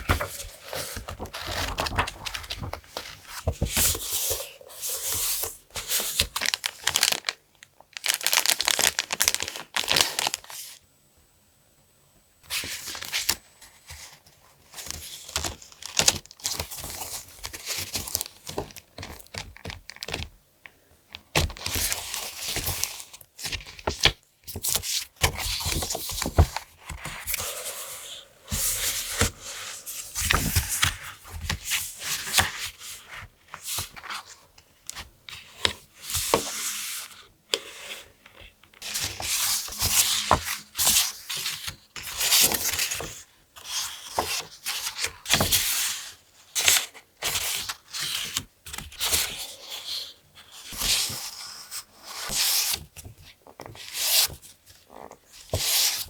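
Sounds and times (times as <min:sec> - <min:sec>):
paper rustling: 0:00.0 - 0:07.4, 0:25.2 - 0:37.2.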